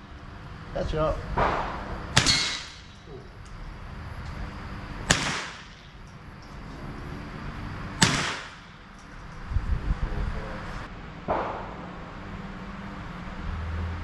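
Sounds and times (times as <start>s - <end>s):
gunshots: 1.4s - 3.0s, 5.0s - 6.0s, 8.0s - 8.8s, 11.2s - 12.2s.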